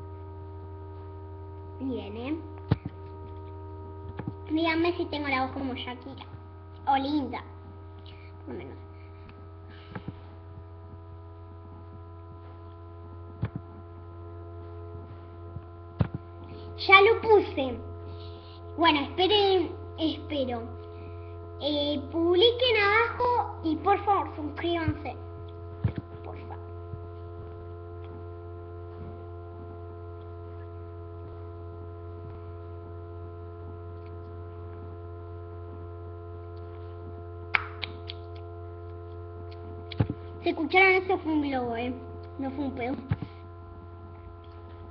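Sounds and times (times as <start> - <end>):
electrical mains hum: 0.0 - 44.9.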